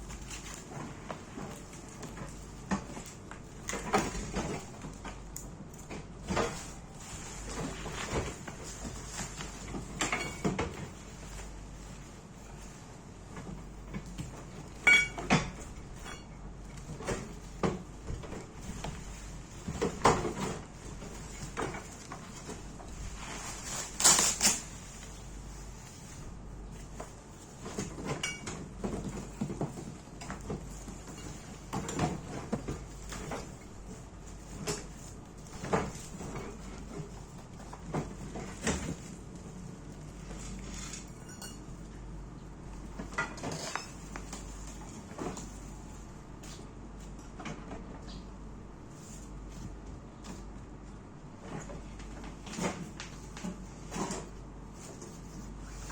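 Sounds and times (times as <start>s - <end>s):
packaging rustling: 21.9s - 25.8s.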